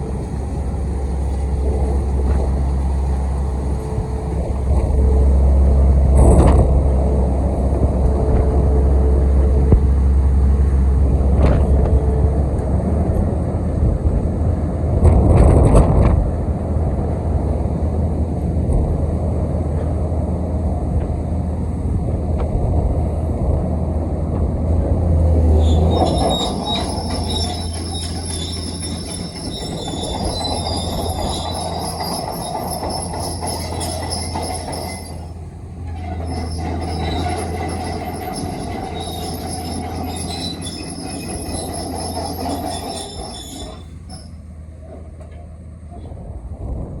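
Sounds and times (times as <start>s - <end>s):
excavator diesel engine running: 24.7s - 45.4s
metallic squeal of steel rubbing: 25.4s - 44.5s.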